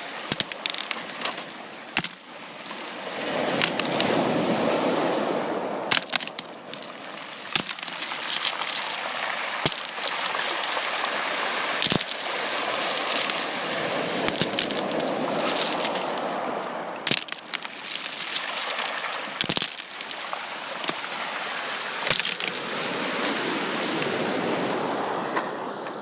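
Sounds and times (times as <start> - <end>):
sea waves washing onto beach: 0.0 - 26.0
sharp crackles and clicks: 0.3 - 1.4, 3.6 - 4.1, 5.9 - 6.9, 7.5 - 9.0, 9.6 - 11.2, 11.8 - 13.5, 14.2 - 16.4, 17.0 - 21.0, 22.0 - 22.6.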